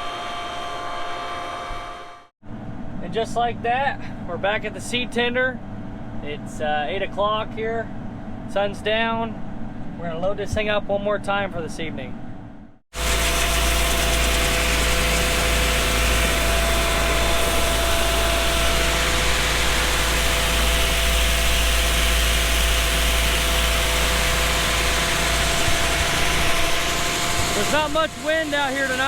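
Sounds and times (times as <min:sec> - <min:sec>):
steady whine: 0:12.6 - 0:29.0
conveyor and engine humming: 0:13.0 - 0:29.0.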